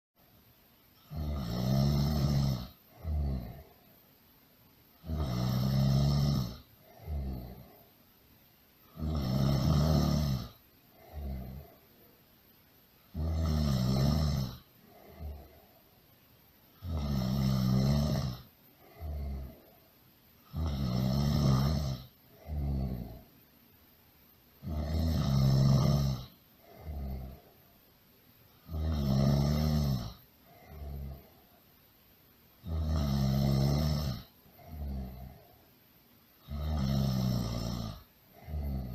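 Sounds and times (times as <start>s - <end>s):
loud snoring: 1.0s - 3.8s, 5.0s - 7.9s, 8.9s - 11.8s, 13.1s - 15.7s, 16.8s - 19.8s, 20.4s - 23.3s, 24.6s - 27.6s, 28.6s - 31.4s, 32.6s - 35.6s, 36.4s - 38.9s.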